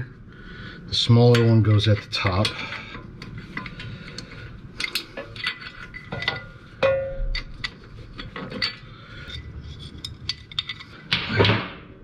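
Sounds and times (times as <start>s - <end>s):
metal parts clicking and clinking: 1.3s - 11.5s
ringing metallic clank: 6.0s - 7.5s.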